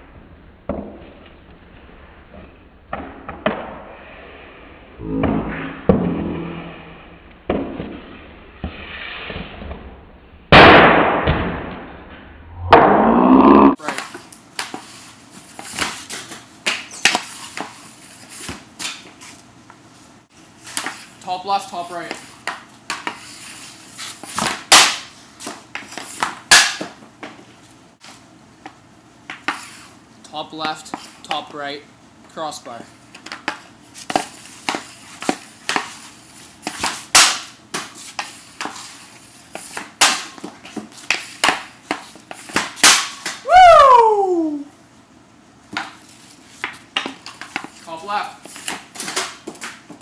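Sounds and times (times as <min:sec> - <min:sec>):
hockey stick shot cracks: 0:10.5 - 0:11.9, 0:24.3 - 0:27.0, 0:36.6 - 0:38.9, 0:39.6 - 0:40.5, 0:41.1 - 0:43.4
hockey stick cracking on puck: 0:13.8 - 0:19.3, 0:20.7 - 0:21.1, 0:22.0 - 0:27.4, 0:28.0 - 0:29.9, 0:33.1 - 0:43.4, 0:45.7 - 0:50.0.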